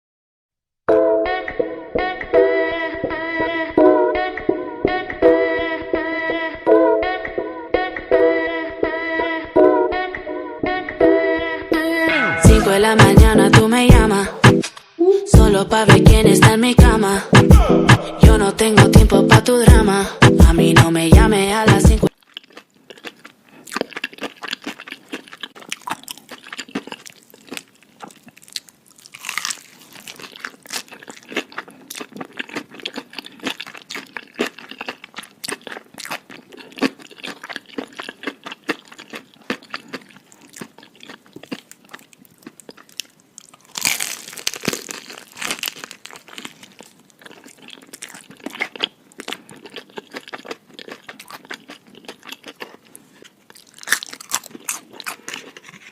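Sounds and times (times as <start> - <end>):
crunchy food being chewed: 22.1 - 55.9.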